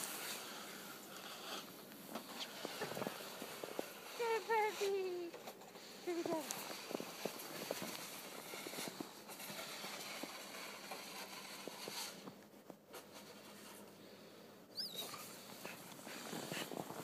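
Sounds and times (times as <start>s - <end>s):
puppy paws crunching through snow: 2.2s - 12.0s
puppy squeaking: 14.7s - 15.3s.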